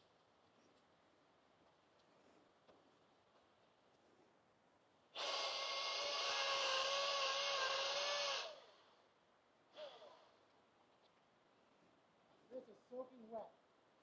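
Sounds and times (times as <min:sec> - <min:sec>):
electric power tool motor running: 0:05.2 - 0:08.7.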